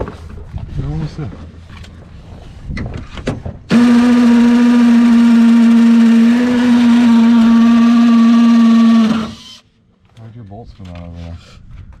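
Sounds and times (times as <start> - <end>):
power tool motor whining: 3.7 - 9.6.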